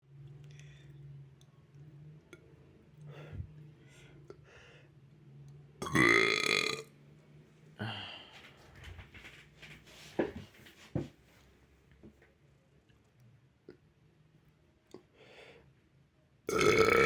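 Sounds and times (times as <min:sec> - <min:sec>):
boy burping: 0:05.8 - 0:06.8, 0:16.5 - 0:17.0.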